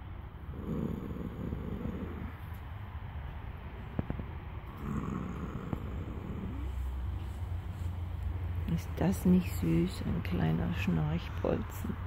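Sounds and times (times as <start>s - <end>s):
horse snoring: 0.5s - 2.6s, 4.7s - 7.1s.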